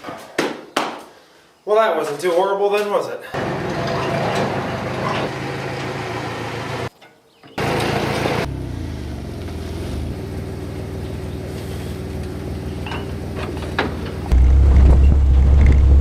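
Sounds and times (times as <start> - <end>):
engine running: 3.4 - 6.9, 7.6 - 16.0.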